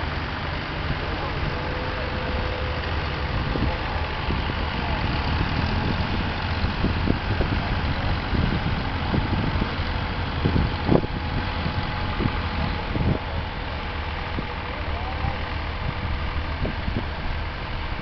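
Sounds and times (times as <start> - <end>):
tractor engine rumbling: 0.0 - 18.0.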